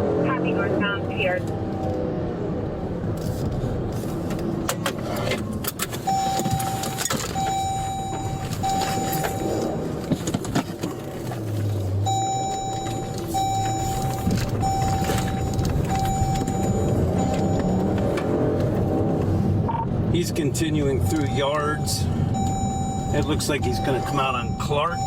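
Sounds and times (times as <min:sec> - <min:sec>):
car running: 0:00.0 - 0:25.0
electronic warning chime beeping: 0:06.1 - 0:09.8, 0:12.1 - 0:18.0, 0:21.0 - 0:25.0.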